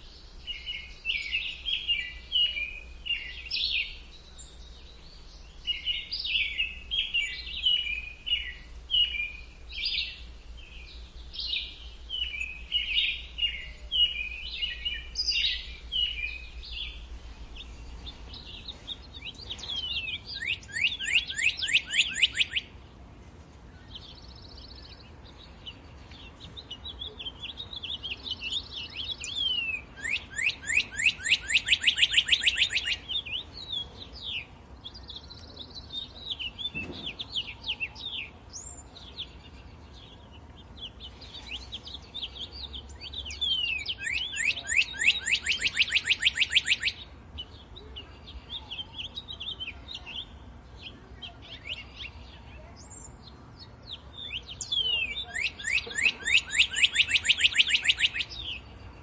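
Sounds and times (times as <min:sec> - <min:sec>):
birds chirping softly: 0:00.0 - 0:59.0
bird trilling loudly: 0:54.6 - 0:58.4.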